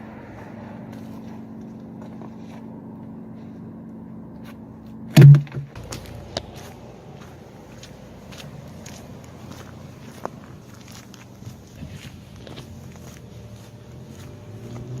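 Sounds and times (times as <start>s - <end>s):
steady low hum: 0.0s - 14.6s
loud thump: 5.2s - 5.9s
sharp knocks and clicks: 5.2s - 5.9s.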